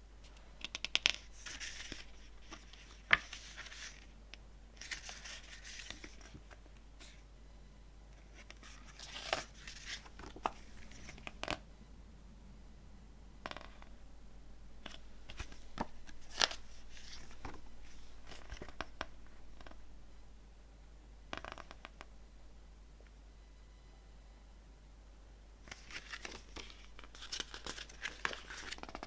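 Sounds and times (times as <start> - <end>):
packaging rustling: 25.7 - 29.0.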